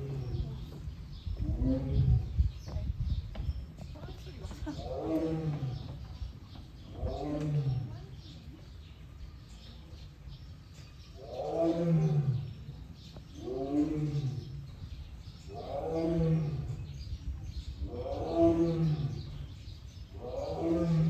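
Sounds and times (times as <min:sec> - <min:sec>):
tiger roaring: 0:06.9 - 0:07.9, 0:11.2 - 0:12.6, 0:13.4 - 0:14.6, 0:15.5 - 0:16.9, 0:17.8 - 0:19.5, 0:20.1 - 0:21.0.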